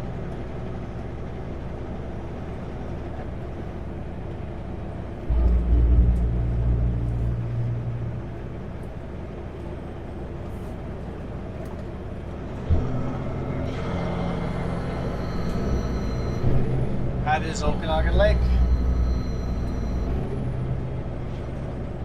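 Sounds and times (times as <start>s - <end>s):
truck diesel engine drone: 0.0s - 22.0s
faint whine: 5.1s - 10.8s, 11.8s - 22.0s.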